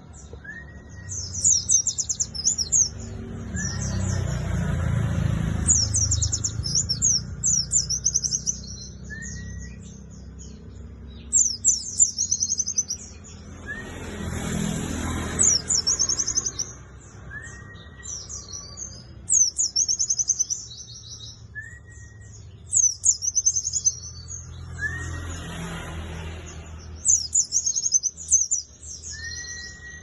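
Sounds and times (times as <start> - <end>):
bird chattering trills: 1.2 - 4.2, 5.6 - 9.8, 18.1 - 21.3
rising bird whistle notes: 9.0 - 9.8, 13.6 - 14.0, 17.3 - 18.4, 21.5 - 22.4, 24.7 - 25.2, 29.1 - 30.0.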